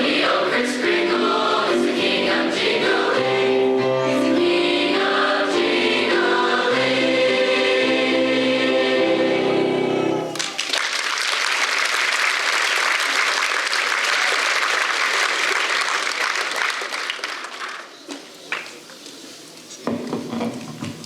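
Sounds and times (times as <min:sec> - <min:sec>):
choir holding a chord: 0:00.0 - 0:10.4
audience applause: 0:10.3 - 0:18.8.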